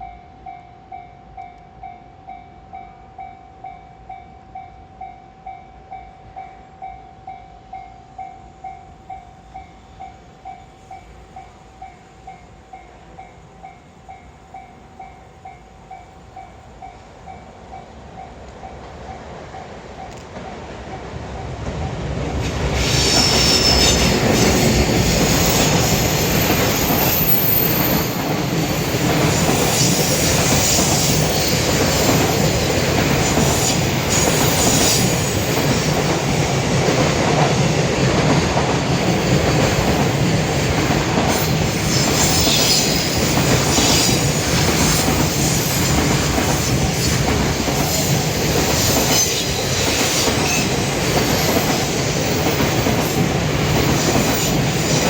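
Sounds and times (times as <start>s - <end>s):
train wheels clattering over rail joints: 22.4s - 55.0s
high wheel squeal: 22.8s - 28.2s, 28.8s - 32.2s, 41.4s - 46.0s, 48.8s - 52.4s.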